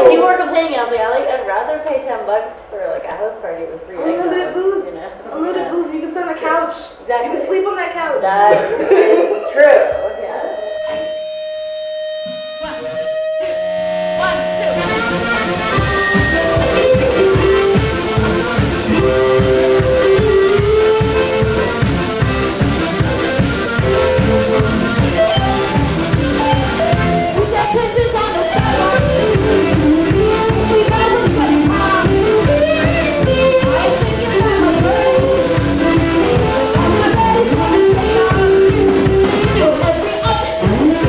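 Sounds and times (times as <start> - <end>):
music with steady beat and melody: 9.4 - 41.0.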